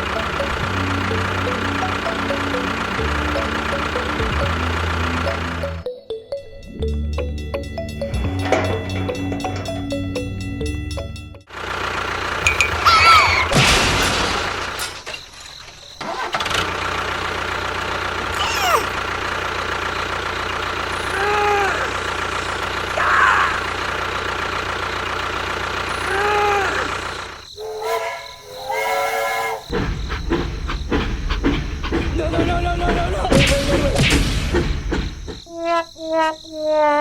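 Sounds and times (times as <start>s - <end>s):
small motor running: 0.0s - 5.8s.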